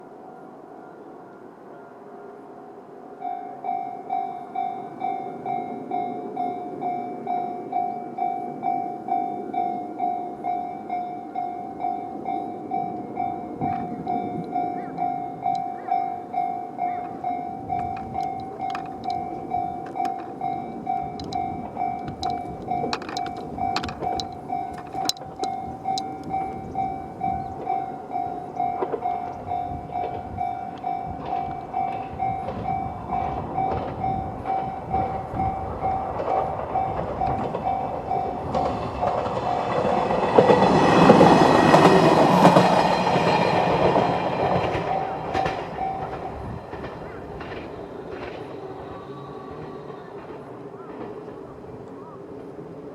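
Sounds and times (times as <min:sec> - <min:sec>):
level-crossing warning bell: 0:00.0 - 0:52.8
train wheel clatter: 0:11.9 - 0:52.6.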